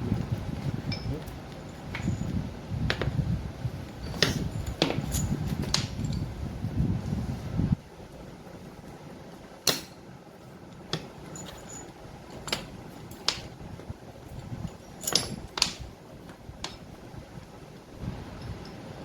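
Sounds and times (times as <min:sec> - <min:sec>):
steady low hum: 0:00.0 - 0:19.0
metal tools clinking: 0:00.8 - 0:03.0, 0:03.9 - 0:06.3, 0:11.0 - 0:13.6, 0:14.3 - 0:15.9.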